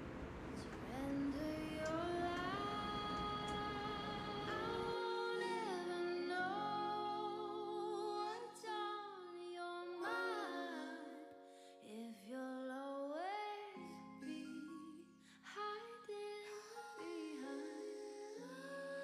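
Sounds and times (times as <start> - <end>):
singer holding sliding notes: 0.0 - 9.0.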